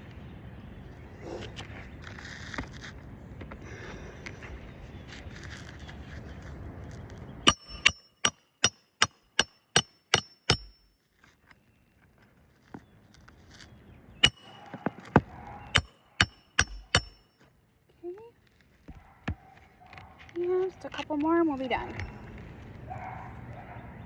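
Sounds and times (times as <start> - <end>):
rustling and scraping: 1.2 - 7.4, 11.0 - 15.8, 17.4 - 23.6
hammer striking roofing nails: 7.5 - 10.9, 14.2 - 17.3.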